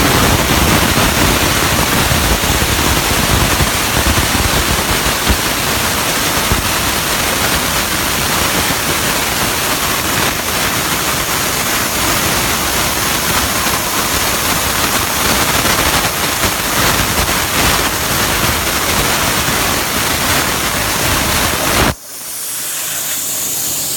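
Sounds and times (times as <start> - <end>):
plasma cutter hissing: 0.1 - 23.9
thin high hiss: 21.8 - 23.9.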